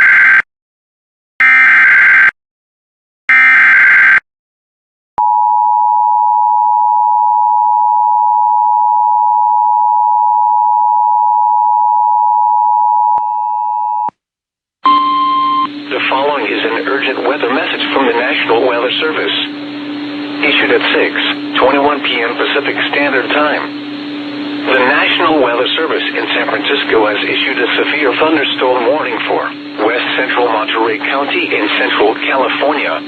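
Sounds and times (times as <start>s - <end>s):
two-tone attention signal: 14.9s - 15.8s.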